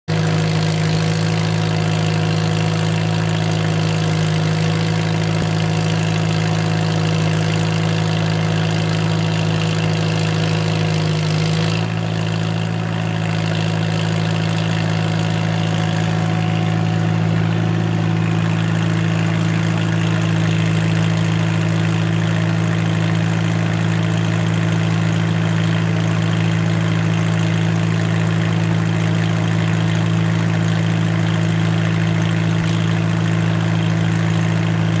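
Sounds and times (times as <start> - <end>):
tractor engine running: 0.0 - 35.0.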